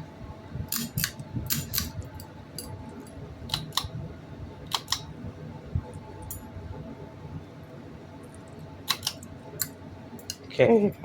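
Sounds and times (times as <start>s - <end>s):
ceiling fan motor hum: 0.0s - 11.0s
sharp clicks: 4.7s - 5.1s, 8.9s - 10.4s.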